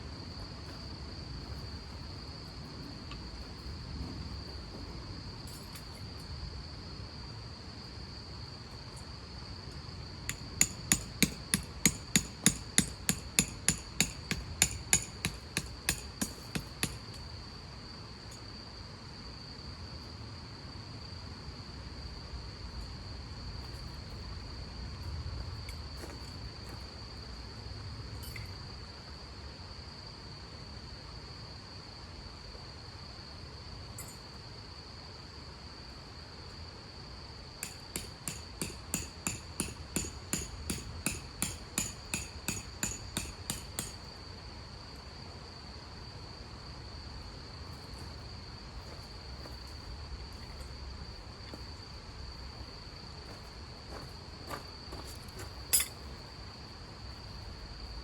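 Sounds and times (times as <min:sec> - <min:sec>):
insects chirring: 0:00.0 - 0:58.0
hammer driving tent peg: 0:10.3 - 0:17.1, 0:37.6 - 0:44.0.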